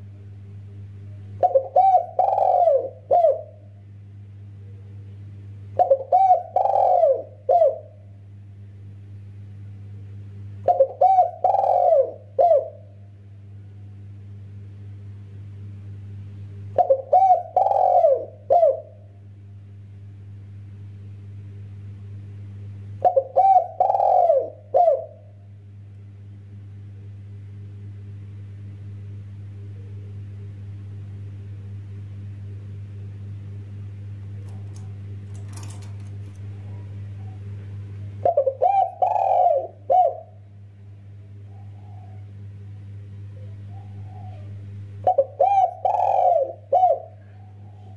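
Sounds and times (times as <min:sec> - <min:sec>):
steady low hum: 0:00.0 - 0:47.9
dove cooing: 0:01.4 - 0:03.7, 0:05.8 - 0:08.0, 0:10.6 - 0:13.0, 0:16.7 - 0:19.1, 0:23.0 - 0:25.4, 0:38.2 - 0:40.4, 0:41.3 - 0:42.5, 0:43.3 - 0:47.9.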